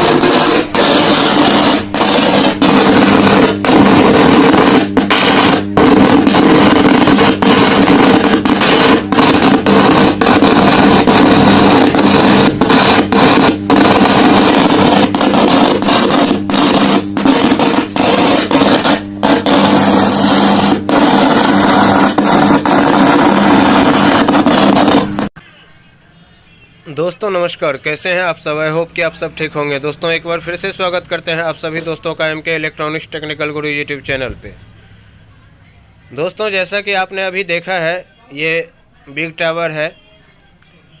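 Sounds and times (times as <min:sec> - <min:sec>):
speaker rumbling crackling noise: 0:00.0 - 0:25.3
steady hum: 0:00.0 - 0:41.0.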